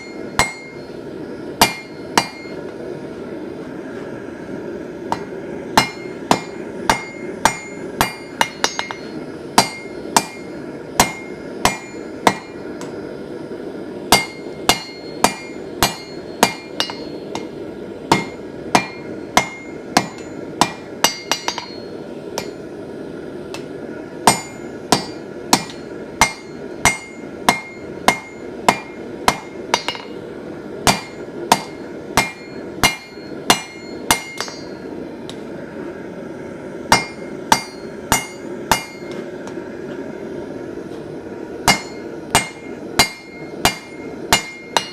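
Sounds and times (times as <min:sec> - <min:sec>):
hammer ringing on anvil: 0:00.0 - 0:01.0, 0:01.6 - 0:02.6, 0:05.1 - 0:13.0, 0:14.1 - 0:22.7, 0:23.6 - 0:30.2, 0:30.8 - 0:34.9, 0:36.9 - 0:39.2, 0:41.6 - 0:44.9
steady low rush: 0:00.0 - 0:44.9.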